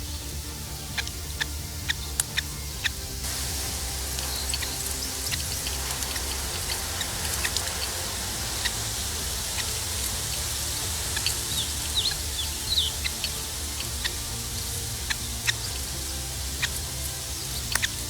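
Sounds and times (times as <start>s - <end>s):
steady low hum: 0.0s - 18.0s
chick peeping: 0.8s - 18.0s.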